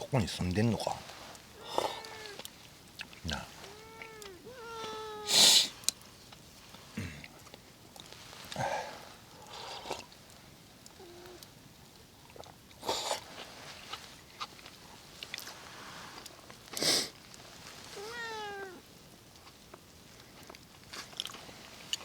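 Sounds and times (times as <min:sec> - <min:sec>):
cat meowing: 0:01.6 - 0:02.5, 0:03.4 - 0:05.4, 0:11.0 - 0:11.4, 0:18.0 - 0:18.8.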